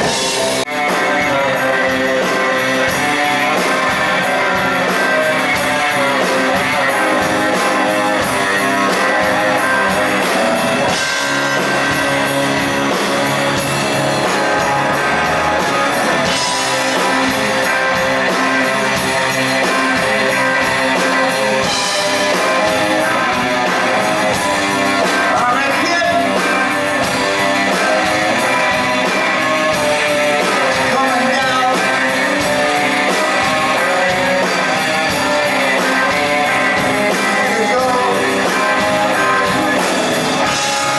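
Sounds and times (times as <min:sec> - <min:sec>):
live rock band playing: 0:00.0 - 0:40.9
person singing: 0:00.0 - 0:40.9.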